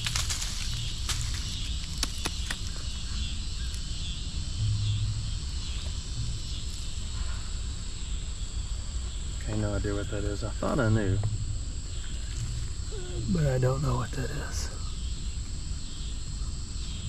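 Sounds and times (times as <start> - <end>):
insects droning: 0.0 - 17.0
low rumbles: 0.0 - 17.0
sharp clicks: 1.8 - 2.8.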